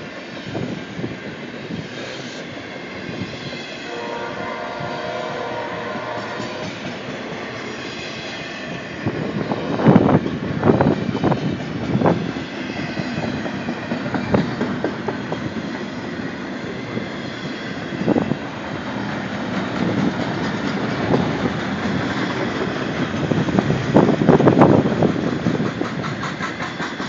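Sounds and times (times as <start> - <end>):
train wheels rumbling on rail: 0.0 - 27.0
wheels clacking over rail joints: 6.0 - 17.0, 18.0 - 27.0.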